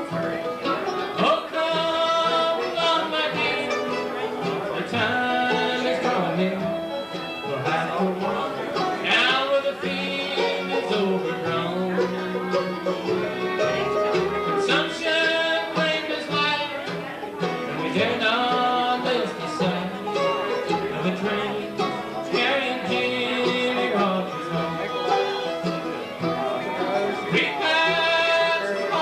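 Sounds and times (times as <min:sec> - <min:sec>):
banjo: 0:00.0 - 0:29.0
bluegrass band playing: 0:00.0 - 0:29.0
guitar: 0:00.0 - 0:29.0.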